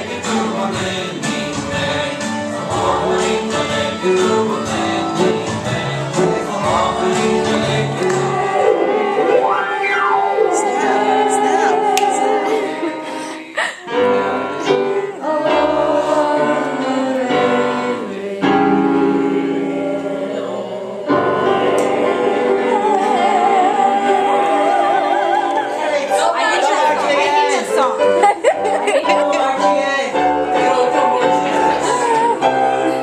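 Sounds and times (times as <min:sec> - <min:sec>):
voices singing long wavering notes: 0:03.0 - 0:27.6.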